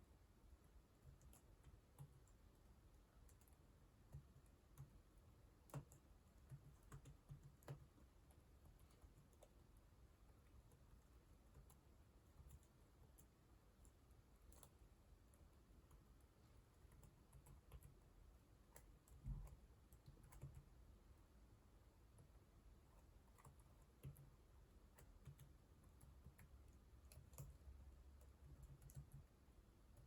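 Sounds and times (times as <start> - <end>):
faint keyboard keystrokes: 5.6 - 9.7, 10.5 - 14.8, 16.7 - 20.8, 22.9 - 30.0.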